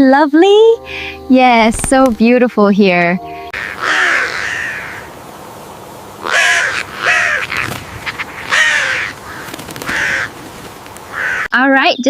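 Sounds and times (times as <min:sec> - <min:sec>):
bird giving harsh calls: 0:03.3 - 0:11.6.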